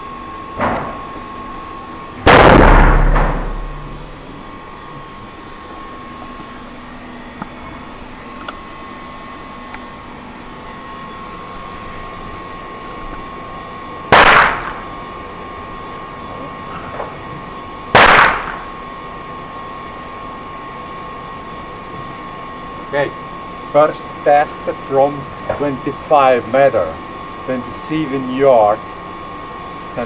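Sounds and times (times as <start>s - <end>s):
rifle shots: 2.3s - 4.2s, 14.1s - 15.0s, 17.9s - 18.8s.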